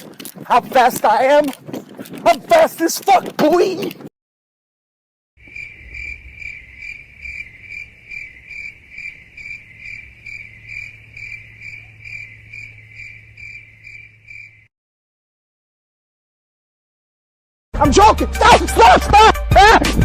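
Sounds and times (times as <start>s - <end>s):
crickets chirping: 5.4s - 14.7s.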